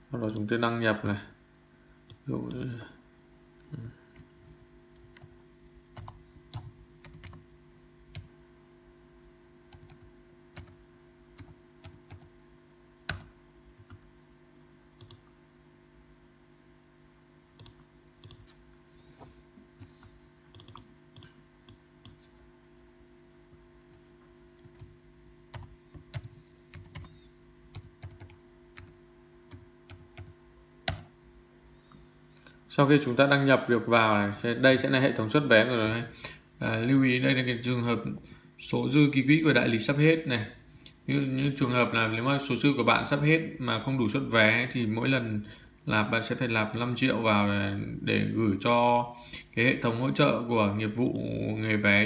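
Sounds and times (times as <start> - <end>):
low steady hum: 0.0 - 52.0
computer keyboard typing: 6.0 - 7.4, 8.1 - 8.3, 9.7 - 10.8, 11.4 - 12.3, 13.1 - 14.0, 15.0 - 15.3, 17.6 - 18.6, 19.8 - 22.3, 24.6 - 31.1.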